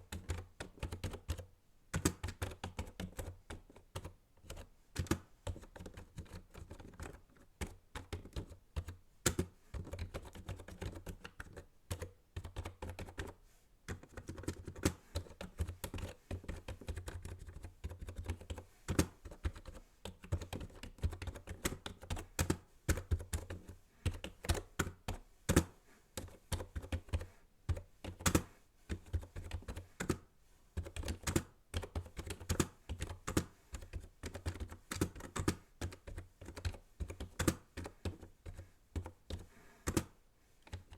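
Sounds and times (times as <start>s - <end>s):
typing on a keyboard: 0.0s - 40.9s.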